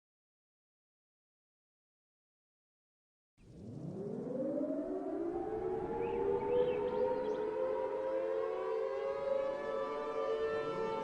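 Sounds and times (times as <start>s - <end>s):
civil defense siren wailing: 3.4s - 11.0s.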